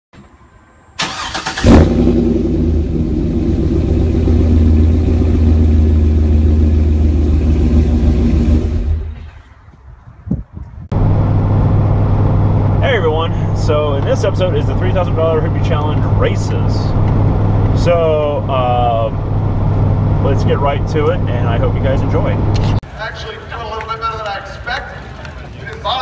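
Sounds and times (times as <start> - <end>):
car engine starting and running: 0.2 - 9.6, 10.9 - 22.9
another engine running: 1.0 - 9.4.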